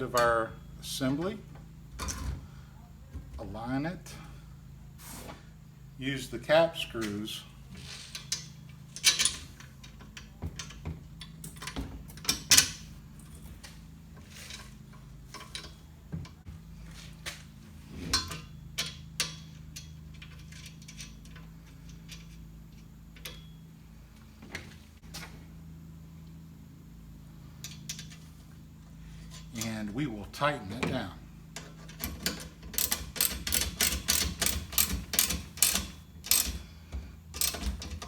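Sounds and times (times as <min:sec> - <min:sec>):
steady low hum: 0:00.0 - 0:38.0
metal screws and nuts clinking: 0:07.8 - 0:13.4, 0:18.1 - 0:23.6, 0:31.6 - 0:36.7, 0:37.3 - 0:38.0.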